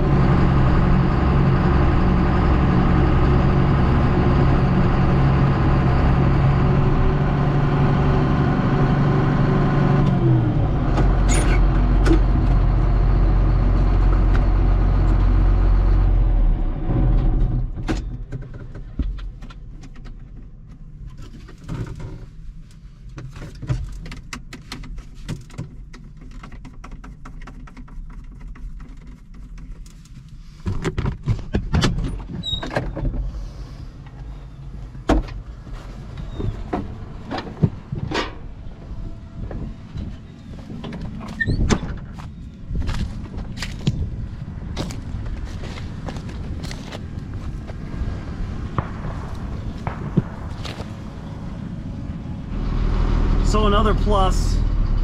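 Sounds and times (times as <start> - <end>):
heavy machinery engine running: 0.0 - 19.0, 32.4 - 55.0
clicks and rattles: 23.2 - 33.2.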